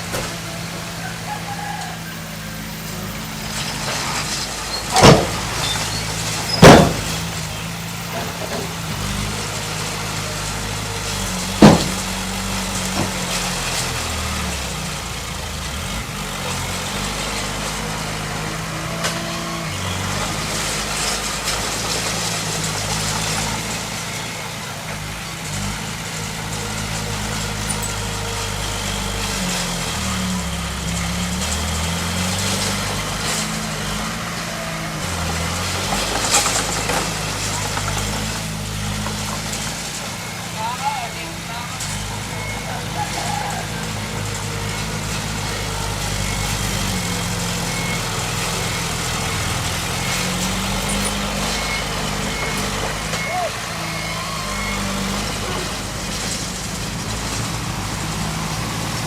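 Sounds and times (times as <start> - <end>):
heavy diesel engine running: 0.0 - 59.0
loud sharp bangs: 6.4 - 7.5.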